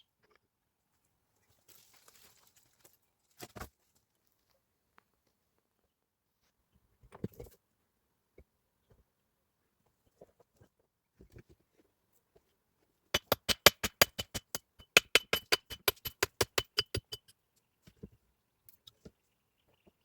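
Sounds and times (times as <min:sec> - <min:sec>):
sharp metallic knocks: 0:13.2 - 0:17.3.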